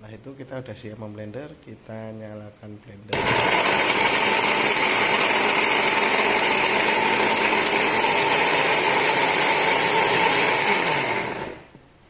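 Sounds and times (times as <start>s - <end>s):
electric blender running: 3.2s - 11.7s.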